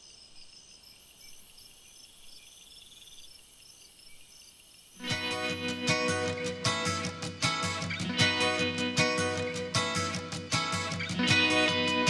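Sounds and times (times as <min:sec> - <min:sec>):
insects chirping: 0:00.0 - 0:05.8
strummed guitar music: 0:05.0 - 0:12.0.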